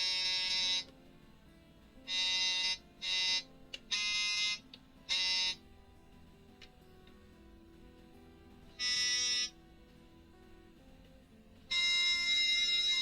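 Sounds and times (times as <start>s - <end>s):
sax-like synthesized notes: 0.0s - 1.0s, 2.0s - 5.8s, 8.7s - 9.7s, 11.7s - 13.0s.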